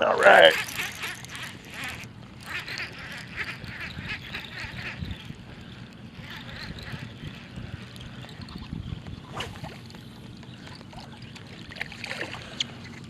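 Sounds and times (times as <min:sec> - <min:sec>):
low steady hum: 0:00.0 - 0:13.0
water splashing against boat: 0:08.4 - 0:13.0.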